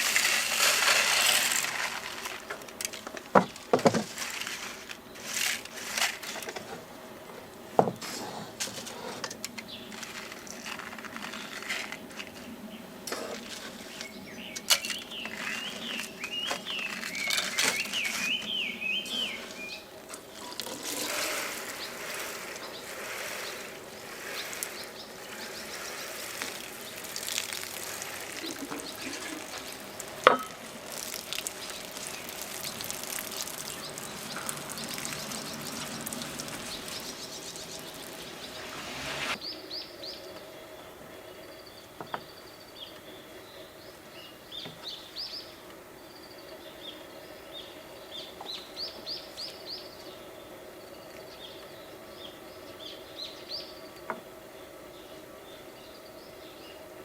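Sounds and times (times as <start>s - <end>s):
birds chirping: 11.2s - 57.0s
rain pattering: 20.2s - 39.4s.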